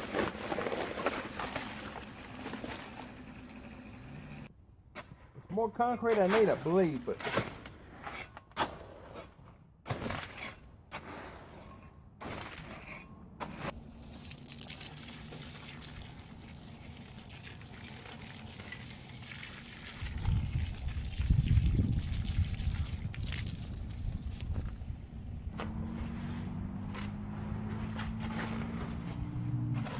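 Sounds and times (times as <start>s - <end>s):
water running: 1.4s - 4.5s.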